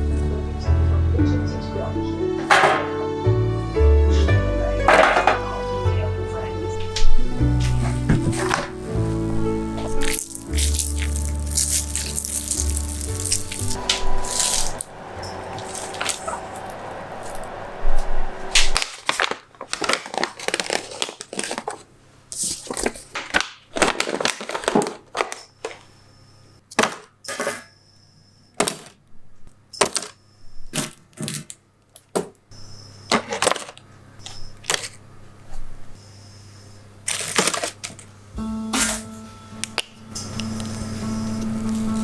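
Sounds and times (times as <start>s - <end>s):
small hard objects clinking: 6.8s - 17.6s.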